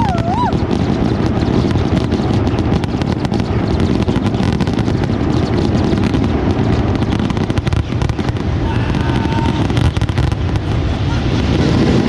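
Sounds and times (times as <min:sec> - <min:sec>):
firework booms: 0:00.0 - 0:12.0
firework crackling: 0:00.0 - 0:12.0.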